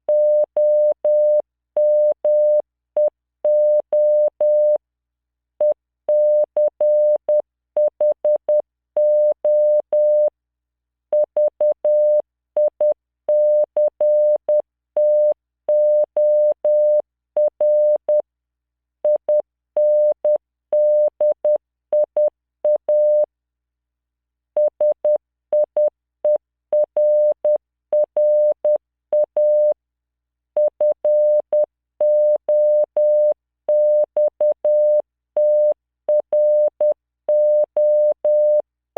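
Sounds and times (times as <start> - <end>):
morse code tone: 30.8 - 38.6.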